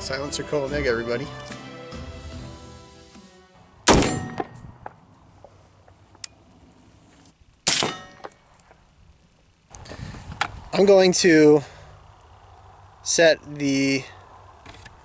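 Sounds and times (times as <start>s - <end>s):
music: 0.0s - 3.8s.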